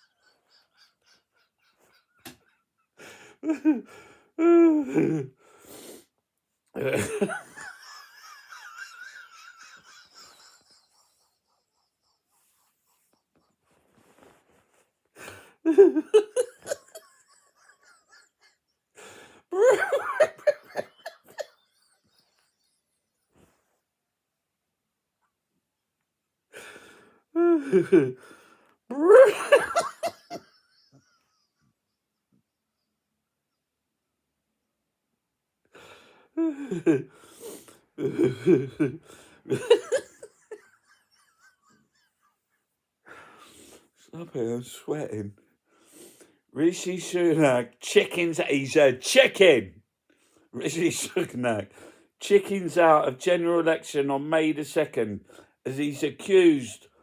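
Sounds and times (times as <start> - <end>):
man laughing: 0.0 - 5.3, 6.8 - 13.1, 15.7 - 22.8, 27.4 - 28.2, 28.9 - 32.2, 36.4 - 37.0, 38.0 - 42.1
man's wordless vocal sounds: 4.4 - 5.4, 28.9 - 29.5.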